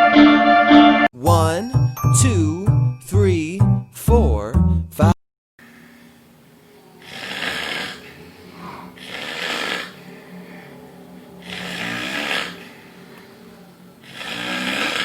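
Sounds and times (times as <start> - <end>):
man snoring loudly: 7.0 - 10.1, 11.4 - 12.8, 14.0 - 15.0.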